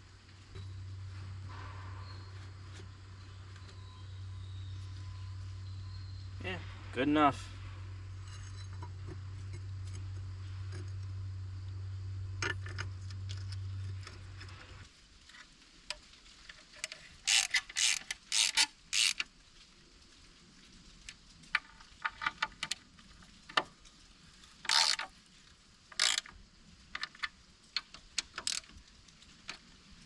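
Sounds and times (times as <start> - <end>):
low hum: 0.0 - 14.9
ratchet clicking: 17.2 - 19.2, 24.7 - 25.1, 25.9 - 26.3, 27.0 - 28.8.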